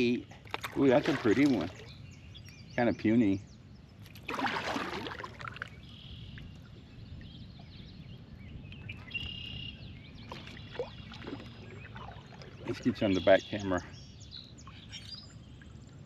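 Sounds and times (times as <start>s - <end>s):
water and wind noise: 0.0s - 16.0s
water splashing at a kayak: 0.4s - 2.0s, 4.0s - 6.8s, 8.9s - 13.6s.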